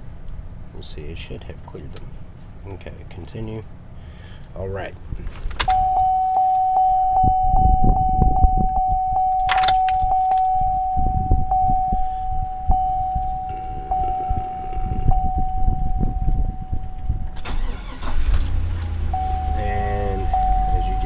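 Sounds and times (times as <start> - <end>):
electronic warning tone: 5.7 - 17.4, 19.1 - 21.0
keys jangling: 9.5 - 10.7
handling noise: 9.5 - 11.1.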